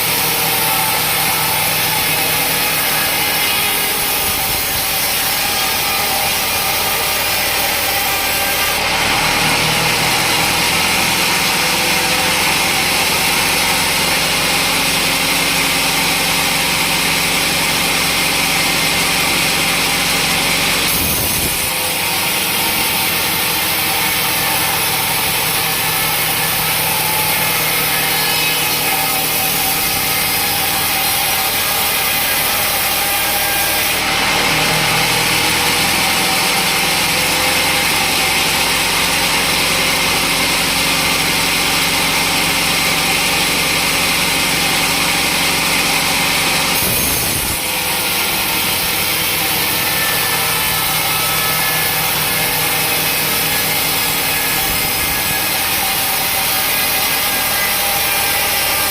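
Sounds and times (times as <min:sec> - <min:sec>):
saw blade cutting log: 0:00.0 - 0:58.9
sawmill saw running: 0:00.0 - 0:58.9.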